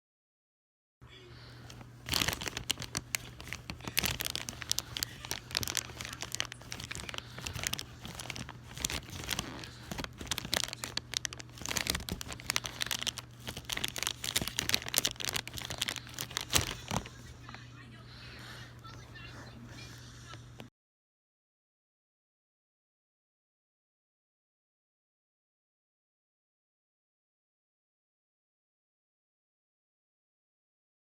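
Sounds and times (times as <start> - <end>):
crinkling and crunching: 1.7 - 17.6.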